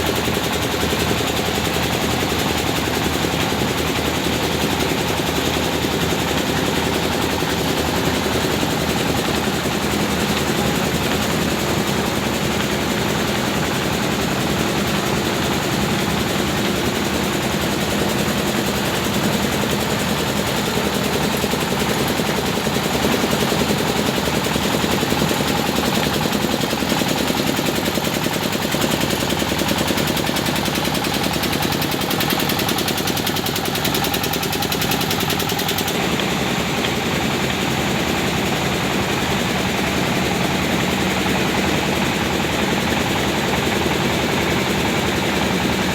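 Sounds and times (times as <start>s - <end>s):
rice husking machine clattering: 0.0s - 45.9s.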